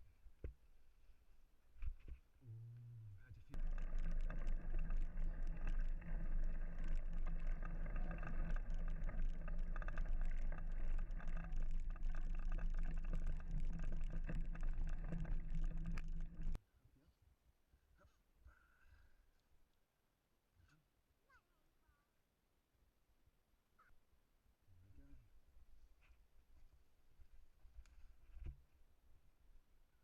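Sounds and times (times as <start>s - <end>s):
mountain bike rolling and rattling: 3.5s - 16.6s.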